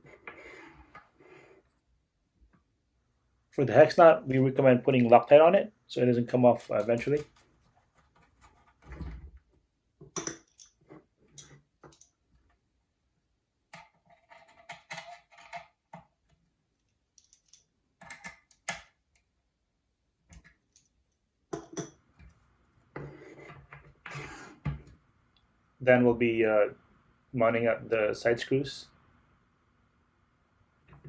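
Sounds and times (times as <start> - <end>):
small metal hardware clinking: 10.2 - 12.2, 17.1 - 18.9, 21.6 - 22.0.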